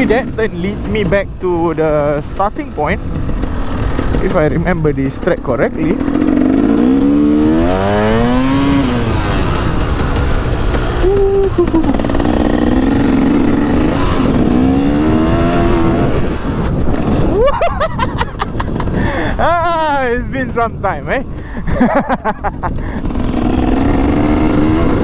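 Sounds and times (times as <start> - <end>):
wind buffeting microphone: 0.0 - 25.0
dirt bike engine revving: 2.4 - 19.2, 22.5 - 25.0.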